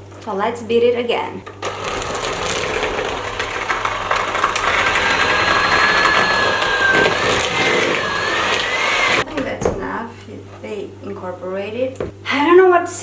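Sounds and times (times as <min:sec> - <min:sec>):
thin steady whine: 0:01.4 - 0:11.7
electric mixer running: 0:01.5 - 0:09.3.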